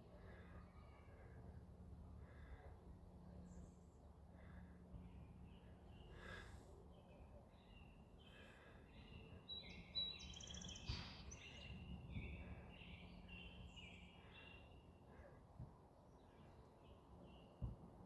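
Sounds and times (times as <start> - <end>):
birds chirping: 4.4 - 14.8.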